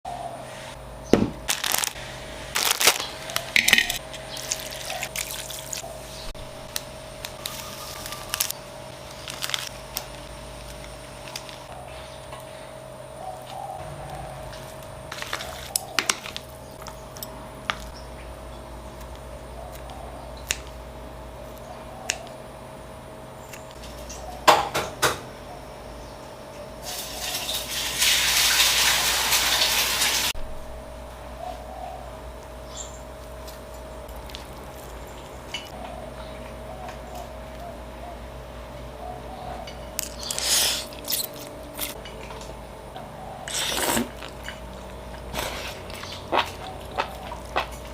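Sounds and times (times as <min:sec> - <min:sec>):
faint steady hum: 0:00.1 - 0:28.2
tap water running: 0:26.9 - 0:30.4.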